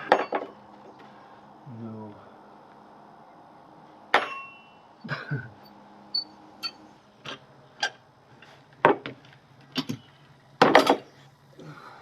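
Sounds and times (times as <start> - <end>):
metal tools clanking: 6.2 - 8.0.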